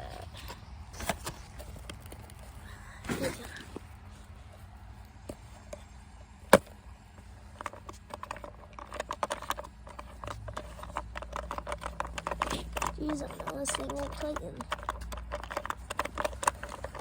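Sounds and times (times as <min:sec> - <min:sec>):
small clicks and rattles: 0:07.2 - 0:17.0.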